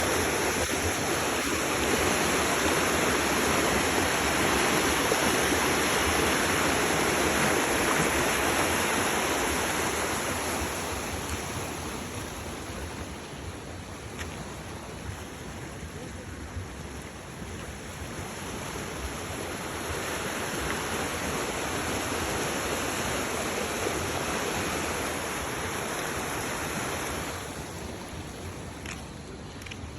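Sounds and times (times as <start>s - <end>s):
water rushing over waterfall: 0.0s - 13.3s, 18.2s - 28.9s.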